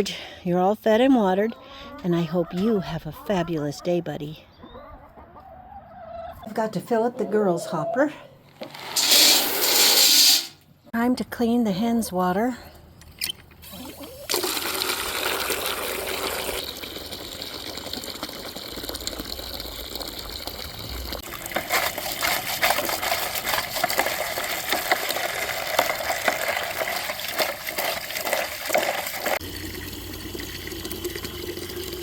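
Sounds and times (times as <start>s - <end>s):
water running into waterer: 8.6s - 10.6s, 13.7s - 32.0s.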